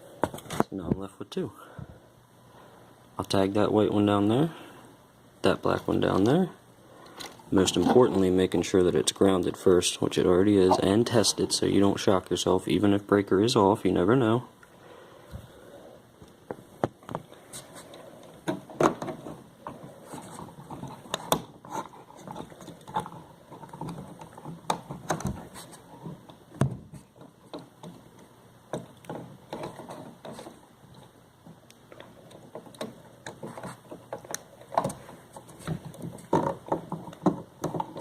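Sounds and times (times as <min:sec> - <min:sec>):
wires clicking and scraping: 0:16.2 - 0:38.0.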